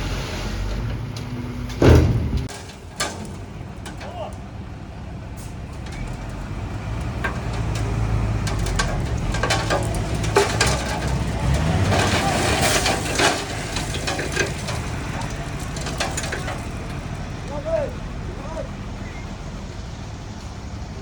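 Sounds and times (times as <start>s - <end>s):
diesel engine running low: 0.0s - 21.0s
rock and soil crunching: 5.7s - 17.6s.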